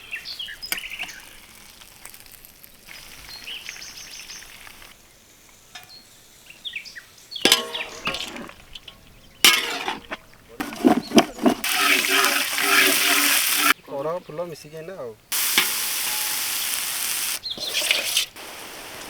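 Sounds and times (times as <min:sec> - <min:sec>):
food sizzling in hot oil: 0:00.0 - 0:05.0, 0:11.6 - 0:13.8, 0:15.3 - 0:19.0.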